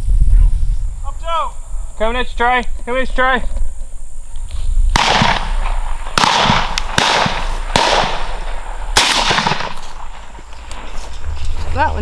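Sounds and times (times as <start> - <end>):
loud shotgun shots: 4.9 - 10.4
distant gunshots: 4.9 - 11.0.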